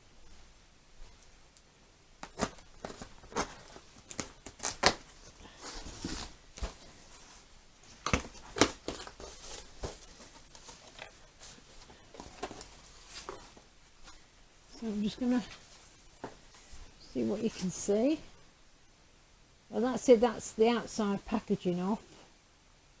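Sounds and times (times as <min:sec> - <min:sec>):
cardboard and tape snapping: 0:02.2 - 0:05.1
packaging rustling: 0:02.2 - 0:16.8.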